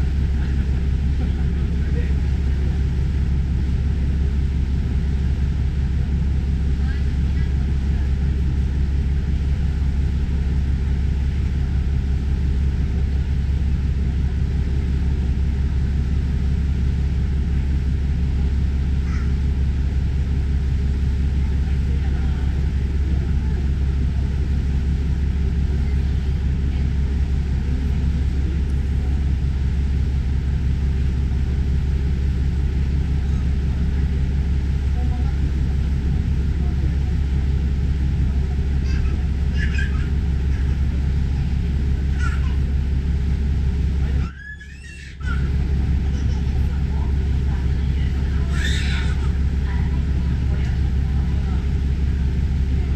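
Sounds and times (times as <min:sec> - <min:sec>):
ferry engine drone: 0:00.0 - 0:52.9.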